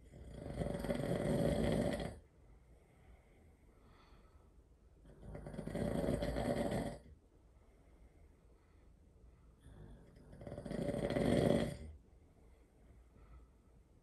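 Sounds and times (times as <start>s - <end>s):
person snoring loudly: 0.0s - 2.2s, 5.1s - 7.1s, 9.9s - 12.0s
faint breath: 2.3s - 5.2s, 7.2s - 10.4s, 11.9s - 14.0s.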